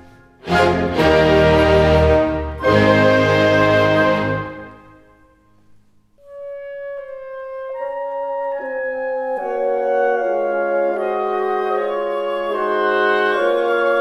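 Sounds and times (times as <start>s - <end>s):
sustained chords music: 0.4s - 5.2s.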